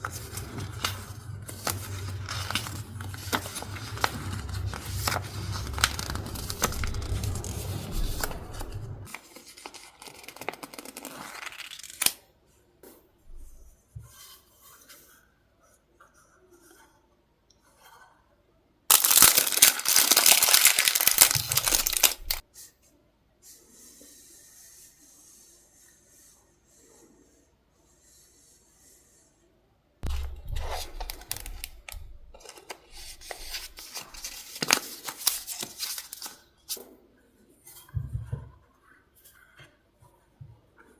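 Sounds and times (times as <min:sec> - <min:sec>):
paper rustling: 0:00.0 - 0:12.2, 0:18.9 - 0:22.4, 0:30.0 - 0:36.8
paper tearing and crackling: 0:00.0 - 0:12.2, 0:18.9 - 0:22.4, 0:30.0 - 0:36.4.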